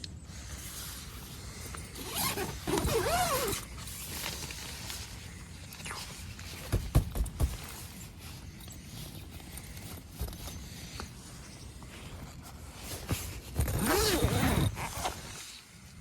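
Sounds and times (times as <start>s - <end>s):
zipper being drawn: 2.0s - 3.7s, 13.6s - 15.4s.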